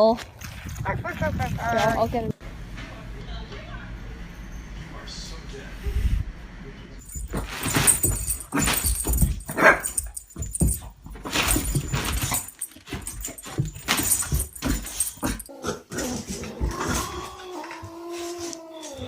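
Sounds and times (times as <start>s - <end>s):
dog barking in rough bursts: 9.4s - 10.0s.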